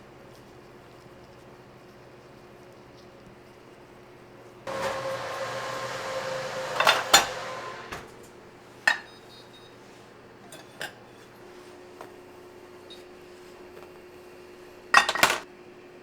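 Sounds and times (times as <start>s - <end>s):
metal baking tins clanking: 4.7s - 8.3s.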